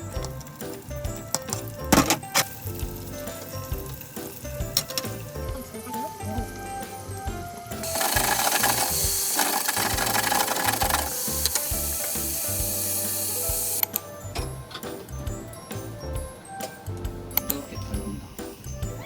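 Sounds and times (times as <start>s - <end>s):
background music: 0.0s - 19.0s
harsh hissing with rapid rattle: 7.8s - 13.8s.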